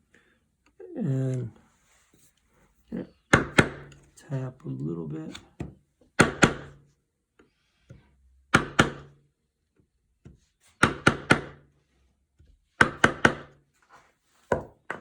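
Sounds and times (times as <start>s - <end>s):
chisel knocks on wood: 3.3s - 4.0s, 5.3s - 6.7s, 14.5s - 15.0s.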